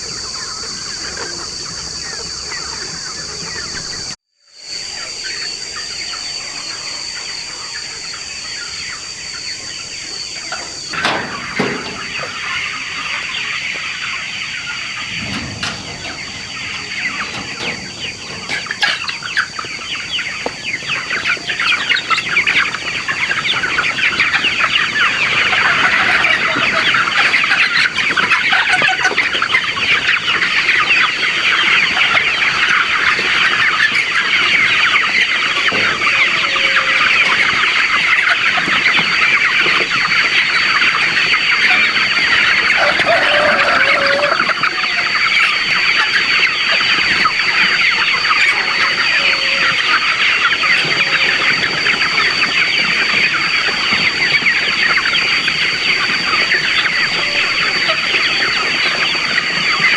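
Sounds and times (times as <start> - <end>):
chickens clucking: 0.0 - 59.9.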